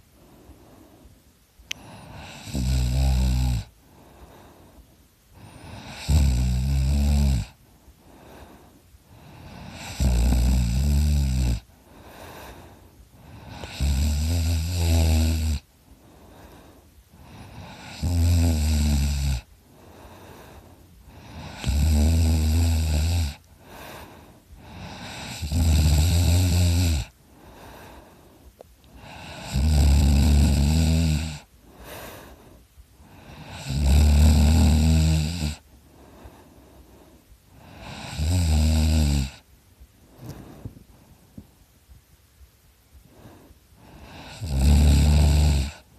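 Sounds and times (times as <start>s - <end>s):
soft breathing: 0.0s - 6.0s, 7.4s - 10.0s, 11.6s - 13.9s, 14.9s - 18.1s, 19.4s - 26.0s, 27.0s - 30.2s, 31.2s - 33.8s, 35.5s - 38.2s, 39.3s - 45.9s
person snoring loudly: 1.7s - 3.7s, 5.4s - 7.6s, 9.3s - 11.7s, 13.2s - 15.6s, 17.2s - 19.5s, 21.1s - 23.8s, 24.6s - 27.1s, 29.0s - 31.5s, 33.1s - 35.6s, 37.6s - 39.4s, 43.8s - 45.9s.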